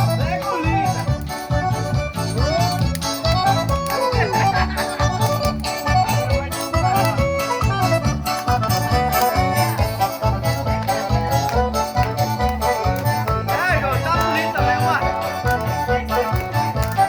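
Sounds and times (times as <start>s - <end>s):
accordion dance music: 0.0s - 17.0s
steady bass beat: 0.0s - 17.0s.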